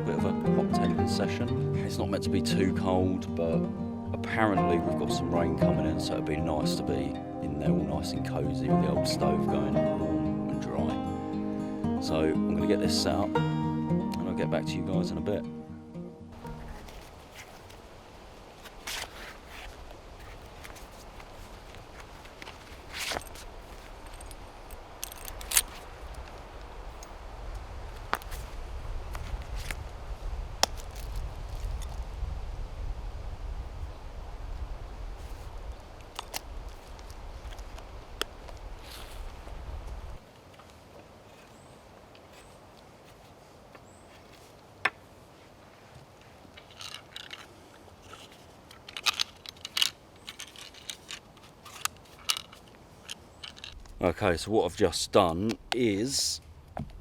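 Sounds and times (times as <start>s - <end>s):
footsteps through undergrowth: 16.4s - 27.2s, 27.8s - 32.1s, 35.2s - 53.8s
twigs snapping: 18.6s - 27.2s, 27.8s - 32.0s, 36.0s - 39.5s, 46.6s - 54.0s
wind rumble on microphone: 24.3s - 40.2s.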